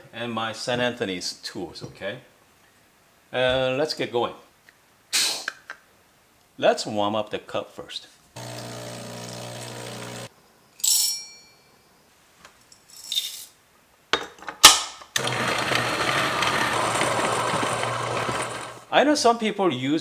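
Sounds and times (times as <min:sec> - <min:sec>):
coffee grinder grinding beans: 0:08.4 - 0:10.3, 0:15.2 - 0:18.9
espresso machine pump humming: 0:08.4 - 0:10.3, 0:15.2 - 0:18.9
ringing clink: 0:10.8 - 0:11.7.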